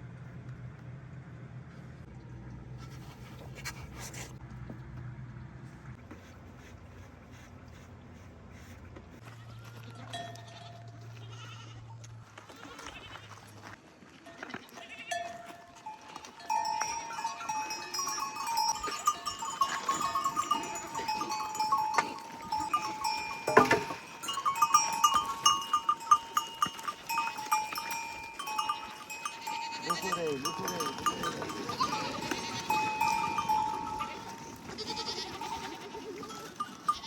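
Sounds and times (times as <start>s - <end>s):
animal bells jangling: 9.8s - 11.7s, 14.3s - 37.0s.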